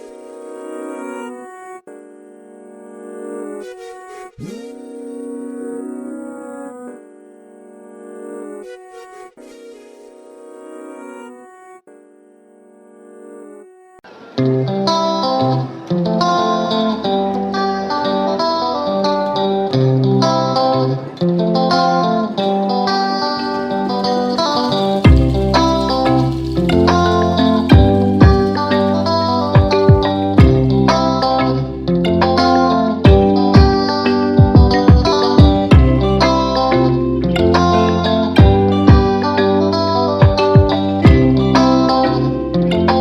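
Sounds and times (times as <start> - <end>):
sustained instrumental chords: 0.0 - 43.0
plucked guitar music: 14.1 - 43.0.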